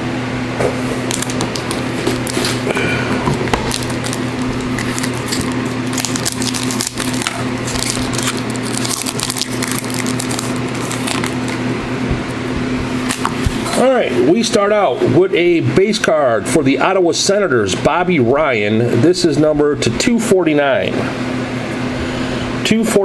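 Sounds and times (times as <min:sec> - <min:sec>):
low electrical hum: 0:00.0 - 0:23.0
plastic wrapping crinkling and tearing: 0:01.0 - 0:12.3
cardboard being handled: 0:01.0 - 0:13.8.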